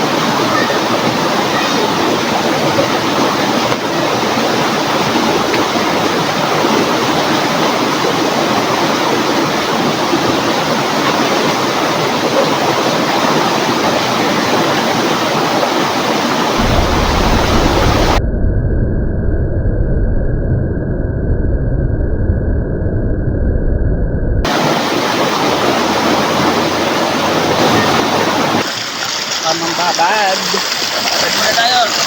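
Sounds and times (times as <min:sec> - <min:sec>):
river water rushing: 0:00.0 - 0:18.2, 0:24.5 - 0:32.0.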